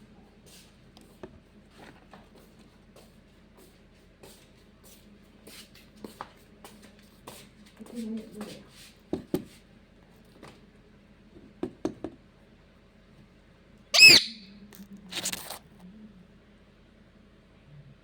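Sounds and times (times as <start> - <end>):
parrot screech: 14.0 - 14.5.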